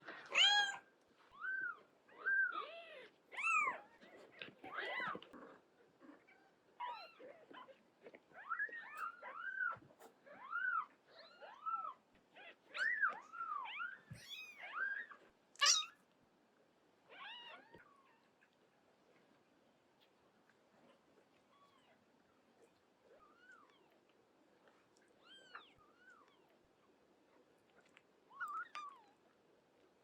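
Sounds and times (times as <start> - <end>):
harsh kitten cry: 15.6 - 16.0
kittens mewing: 15.6 - 16.0.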